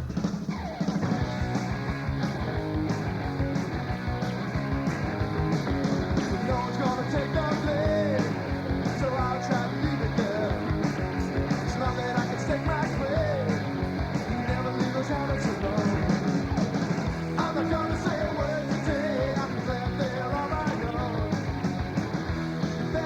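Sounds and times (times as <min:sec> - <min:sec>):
rock music with distorted guitars: 0:00.0 - 0:23.0
person singing: 0:06.2 - 0:16.4, 0:17.2 - 0:21.4.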